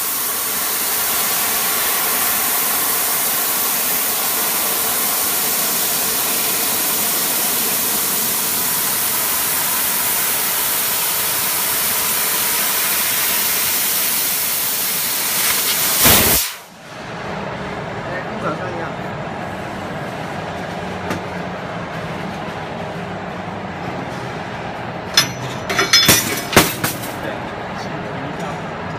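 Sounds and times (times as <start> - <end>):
laser cutter gas hissing: 0.0 - 16.8
faint machine hum: 0.0 - 28.9.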